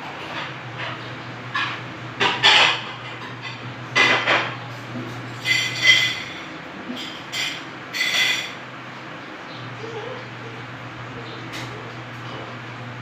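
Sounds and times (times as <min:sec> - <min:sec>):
plates and utensils clattering: 0:00.1 - 0:08.6.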